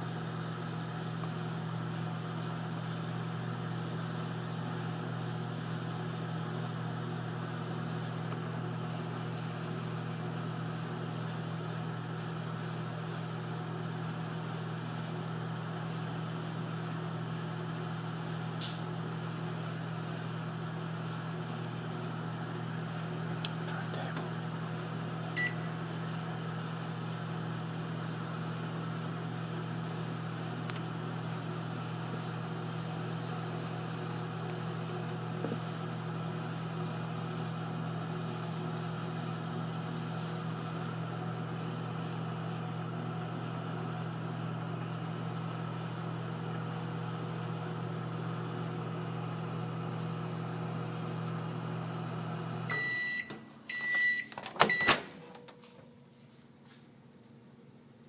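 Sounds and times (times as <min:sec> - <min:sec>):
microwave oven humming: 0:00.0 - 0:58.0
microwave beeps: 0:25.3 - 0:25.9, 0:52.6 - 0:55.3.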